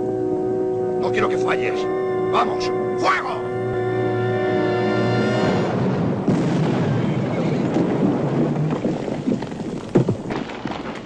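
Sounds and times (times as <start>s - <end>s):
cannon blast rumbling: 5.5s - 11.0s.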